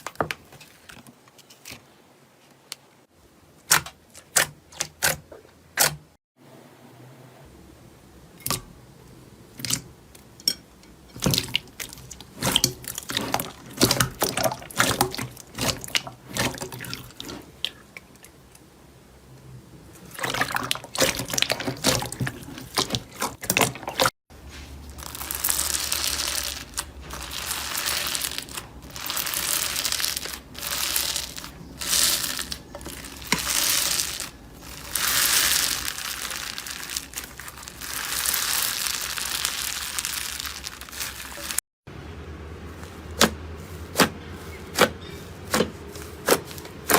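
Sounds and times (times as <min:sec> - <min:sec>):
slime crackling: 0:24.8 - 0:41.6.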